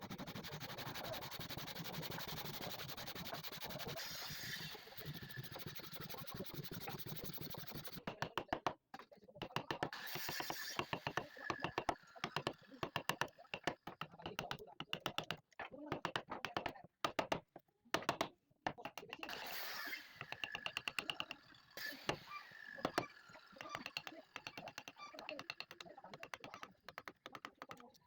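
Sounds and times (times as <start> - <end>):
hand tool rasping wood: 0.0 - 8.4, 9.6 - 14.0, 19.1 - 27.7.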